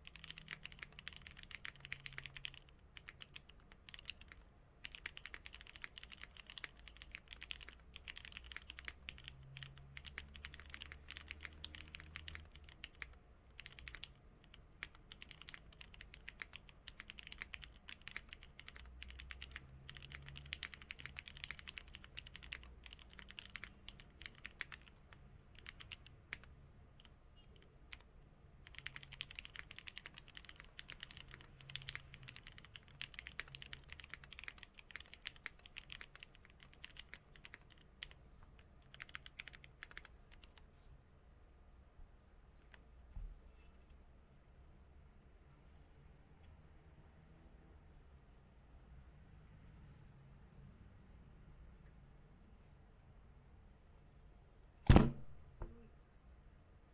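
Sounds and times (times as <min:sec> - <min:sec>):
mechanical keyboard typing: 0:00.0 - 0:40.6.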